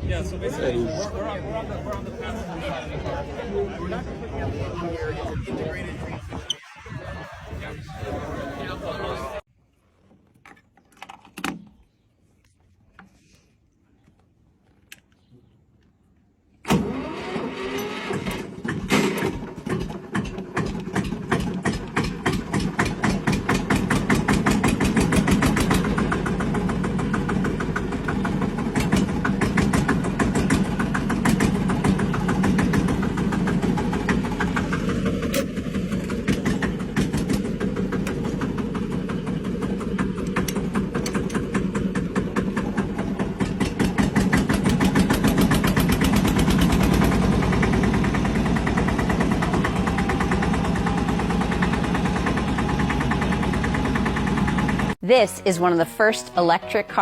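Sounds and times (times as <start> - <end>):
car engine starting and running: 16.6 - 55.0.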